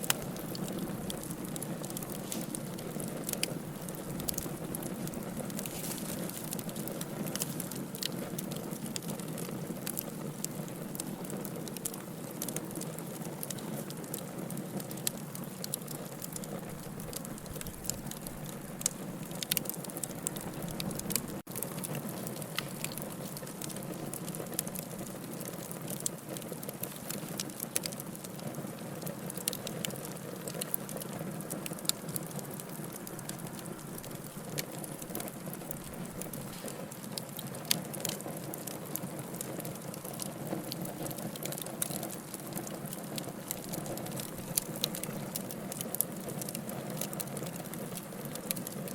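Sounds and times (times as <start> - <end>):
rush of fire flames: 0.0 - 28.4
fire crackling and popping: 0.0 - 48.9.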